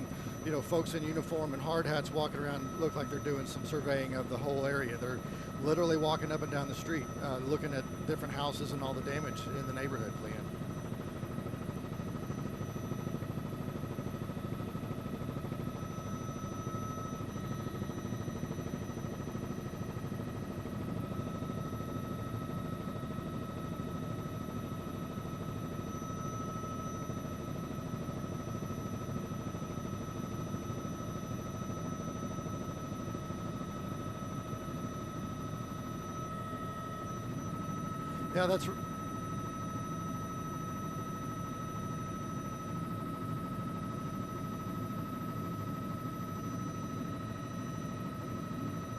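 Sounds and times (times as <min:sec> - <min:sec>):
thin high whine: 0:00.0 - 0:11.0, 0:30.6 - 0:48.9
helicopter engine and rotor drone: 0:00.0 - 0:48.9.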